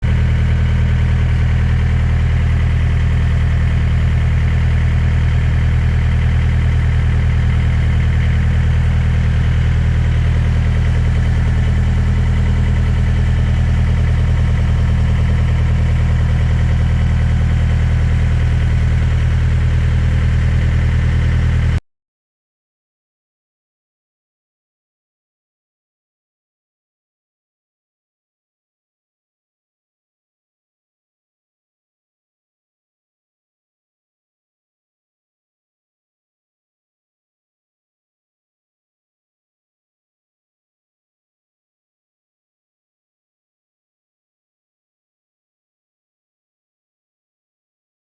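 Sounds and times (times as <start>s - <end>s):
engine idling: 0.0s - 21.8s.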